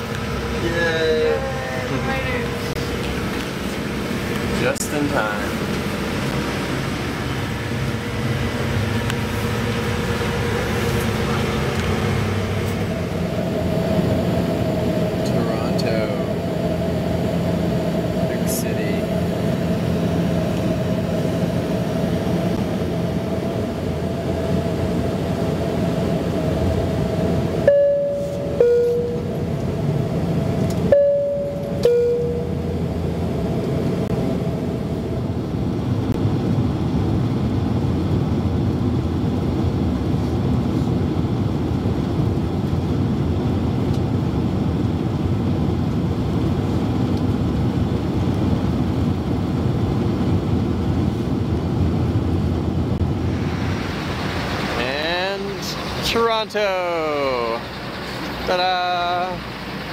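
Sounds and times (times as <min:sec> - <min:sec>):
airliner cabin noise: 0:00.0 - 0:59.9
two-note ding-dong chime: 0:27.7 - 0:29.3, 0:30.9 - 0:32.6.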